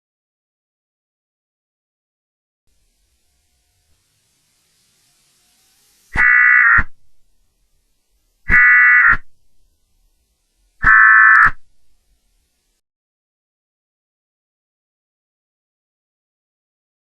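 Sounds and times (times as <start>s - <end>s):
harsh digital data bursts: 5.2s - 7.0s, 8.5s - 9.3s, 10.8s - 11.6s.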